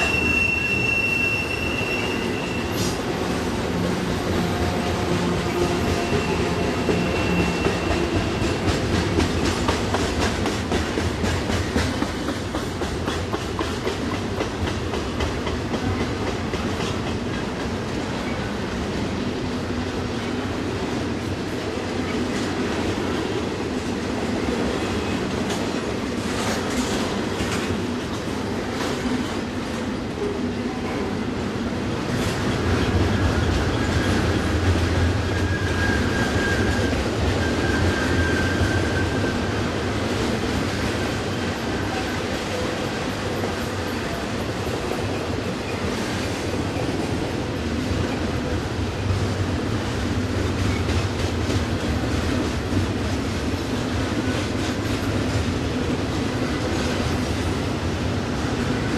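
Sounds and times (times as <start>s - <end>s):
wheel squeal: 0.0s - 3.0s, 35.2s - 39.5s
train wheels clacking over rail: 0.0s - 19.0s, 22.0s - 30.3s.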